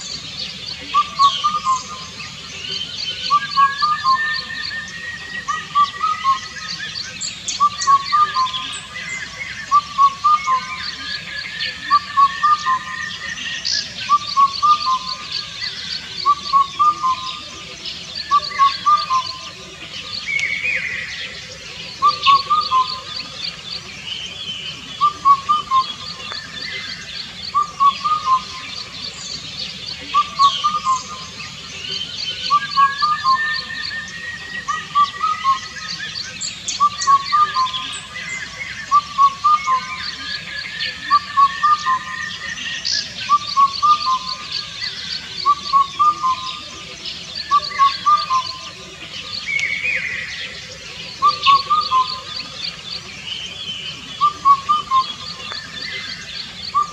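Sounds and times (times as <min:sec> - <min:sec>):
birds chirping and trilling: 0:00.0 - 0:56.9
cuckoo whistled phrase: 0:00.8 - 0:02.1, 0:03.3 - 0:06.9, 0:07.6 - 0:08.8, 0:09.7 - 0:15.2, 0:18.3 - 0:19.5, 0:25.0 - 0:26.8, 0:27.5 - 0:28.8, 0:30.0 - 0:31.3, 0:32.5 - 0:35.9, 0:36.8 - 0:38.0, 0:38.9 - 0:44.4, 0:45.4 - 0:46.8, 0:47.4 - 0:48.7, 0:51.2 - 0:52.4, 0:54.2 - 0:56.1.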